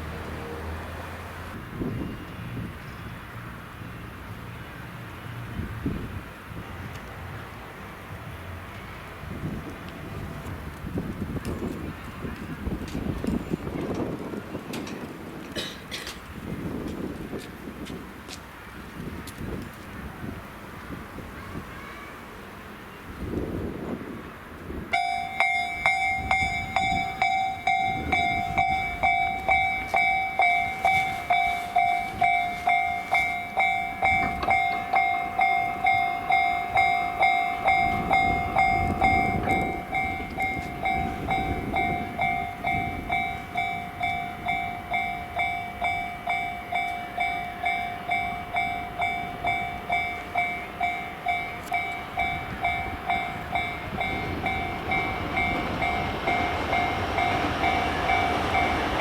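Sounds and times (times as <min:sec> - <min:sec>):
train rumble: 0:00.0 - 0:59.0
level crossing warning bell: 0:24.9 - 0:59.0.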